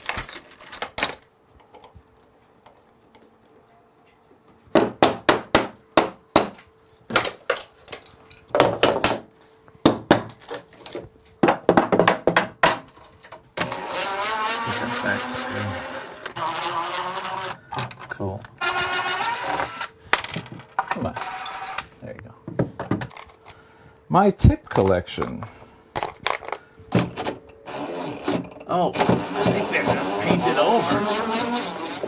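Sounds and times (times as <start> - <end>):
small metal tools clinking: 0.0 - 1.3, 24.6 - 25.4
small electric motor running: 13.6 - 17.6, 18.6 - 20.0, 27.6 - 28.4, 29.0 - 32.0.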